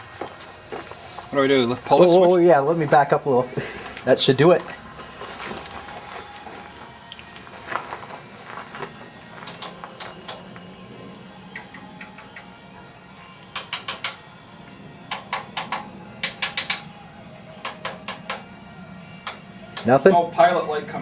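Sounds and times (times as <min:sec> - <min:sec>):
faint steady hum: 0:03.1 - 0:21.0
switch clicks: 0:17.6 - 0:18.4.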